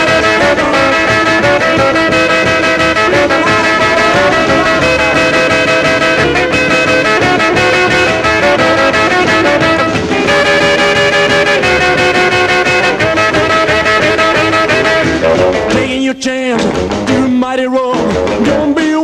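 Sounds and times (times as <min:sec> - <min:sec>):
upbeat rockabilly instrumental: 0:00.0 - 0:19.0.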